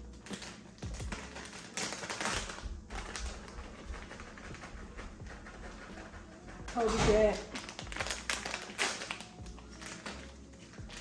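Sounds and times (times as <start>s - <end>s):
crinkling packet rustling: 0.1s - 4.5s, 6.7s - 11.0s.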